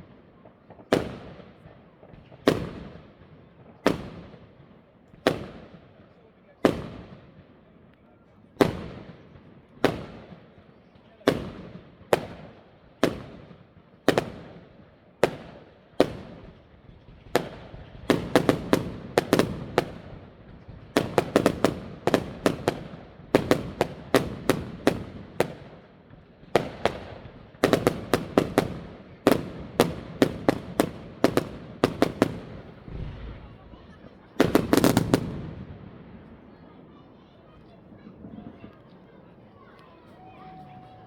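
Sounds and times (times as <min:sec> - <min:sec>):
fireworks bangs: 0:15.2 - 0:36.8.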